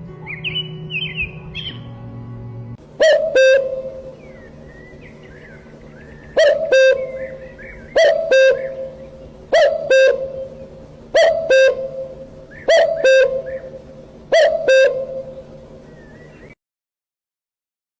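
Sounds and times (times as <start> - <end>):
bird double call: 3.0 - 16.6.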